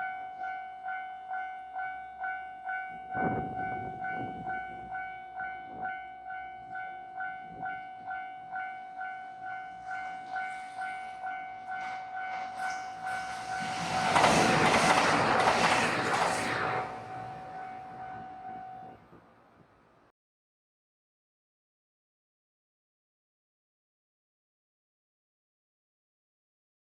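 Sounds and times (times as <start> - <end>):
level-crossing warning bell ringing: 0.0 - 14.0, 17.6 - 19.0
diesel train rushing past: 9.7 - 19.5.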